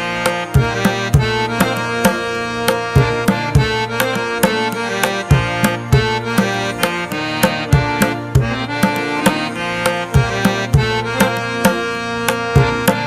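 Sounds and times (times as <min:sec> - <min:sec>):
reedy sustained melody: 0:00.0 - 0:13.0
hand drum rhythm: 0:00.1 - 0:13.0.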